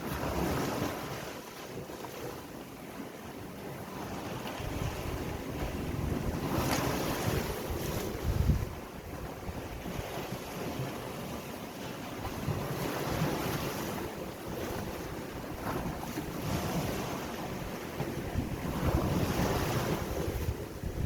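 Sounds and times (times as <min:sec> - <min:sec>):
sea waves washing in: 0:00.0 - 0:21.0
wind buffeting microphone: 0:04.0 - 0:11.4, 0:12.2 - 0:21.0.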